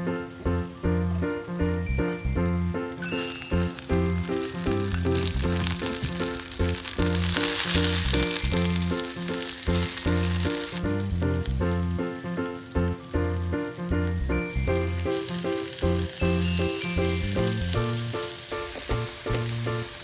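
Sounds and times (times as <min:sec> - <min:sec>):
food sizzling on a griddle: 0:03.0 - 0:12.0, 0:14.5 - 0:20.0.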